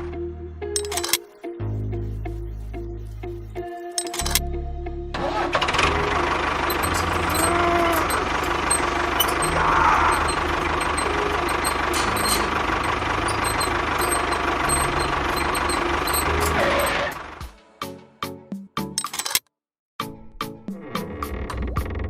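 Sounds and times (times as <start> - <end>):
engine running with low pulsing: 1.9 - 17.5.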